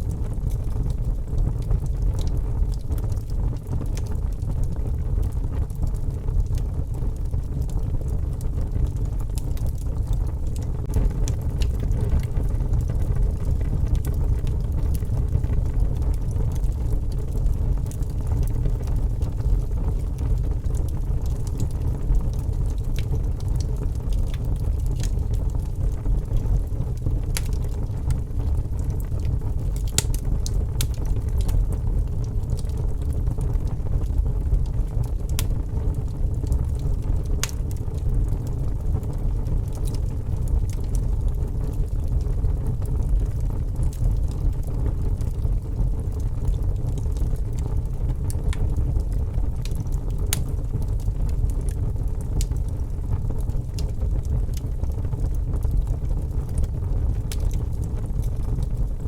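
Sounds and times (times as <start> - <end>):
wood fire crackling and popping: 0.0 - 59.0
low rumble: 6.4 - 35.4.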